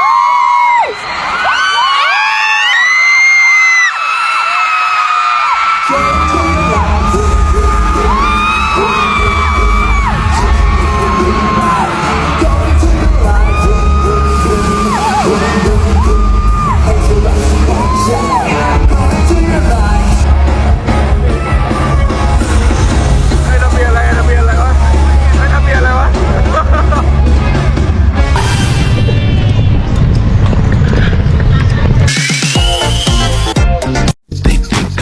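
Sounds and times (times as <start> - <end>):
live concert music with singing: 0.0 - 30.1
crowd screaming and whooping: 0.0 - 33.6
heavy bass beat: 5.9 - 35.0.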